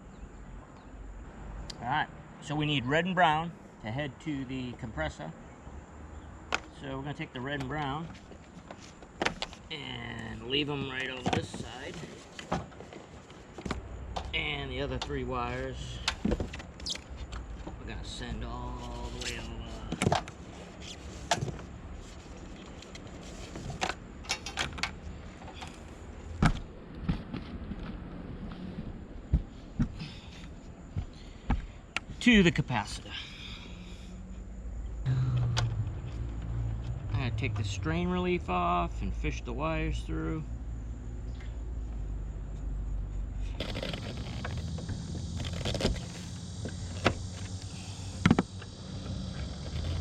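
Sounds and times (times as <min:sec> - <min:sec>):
steady low hum: 0:25.0 - 0:50.0
steady low rumble: 0:33.8 - 0:43.5.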